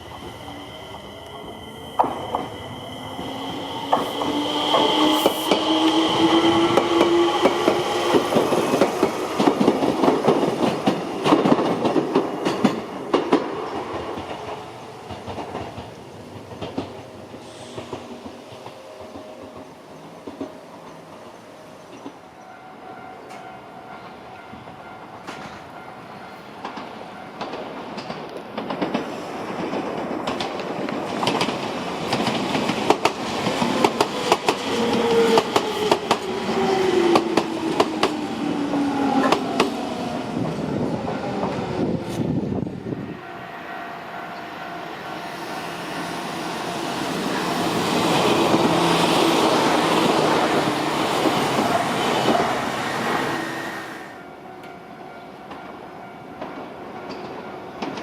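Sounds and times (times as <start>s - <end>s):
train motor whine: 0.0s - 9.5s, 34.4s - 54.2s
train rumble: 0.0s - 22.3s, 23.2s - 43.5s, 44.3s - 54.0s.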